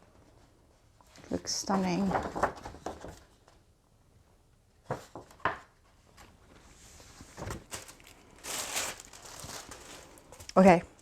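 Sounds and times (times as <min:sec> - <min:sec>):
wrapping rustling: 0:06.1 - 0:11.0.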